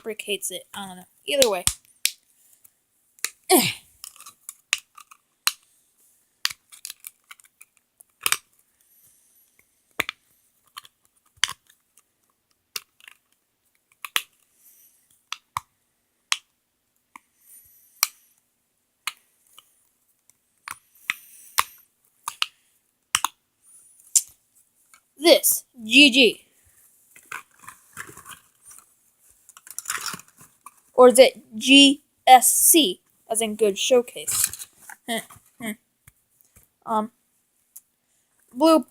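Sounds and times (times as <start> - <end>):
plastic toy pieces clacking: 4.0 - 5.7, 6.4 - 8.6, 9.9 - 14.5, 20.6 - 23.4, 29.4 - 30.8, 34.3 - 34.7.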